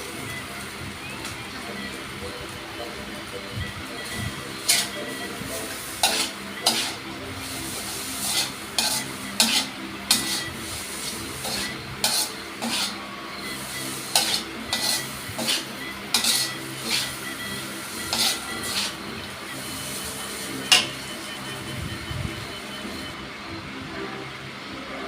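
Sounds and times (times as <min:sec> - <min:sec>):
frying sizzle: 0:00.0 - 0:23.2
metal spatula scraping a wok: 0:04.0 - 0:21.5.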